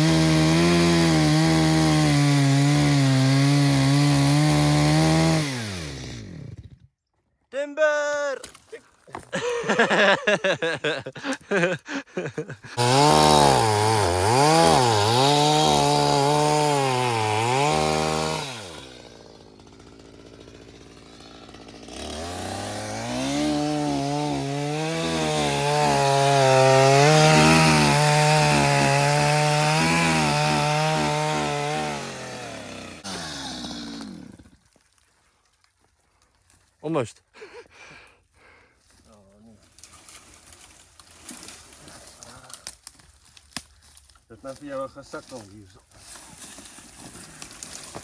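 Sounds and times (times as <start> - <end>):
chainsaw cutting logs: 0.0 - 7.0, 11.1 - 34.8, 46.1 - 48.0.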